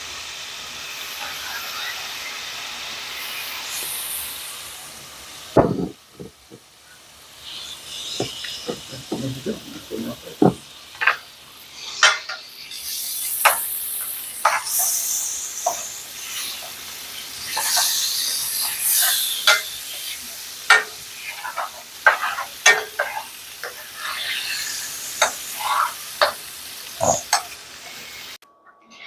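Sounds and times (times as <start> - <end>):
meat sizzling in a frying pan: 0.0 - 28.4
utensil scraping a pan: 7.5 - 12.5, 13.4 - 28.1.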